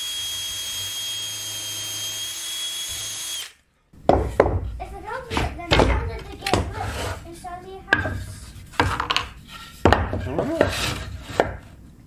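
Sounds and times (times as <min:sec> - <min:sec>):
hard objects knocking: 0:04.0 - 0:07.0, 0:07.9 - 0:11.7.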